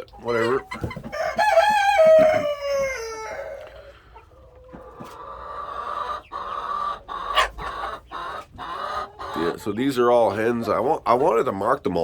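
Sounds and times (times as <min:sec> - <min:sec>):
chickens clucking: 0:00.0 - 0:12.0
rooster crowing: 0:01.1 - 0:03.7.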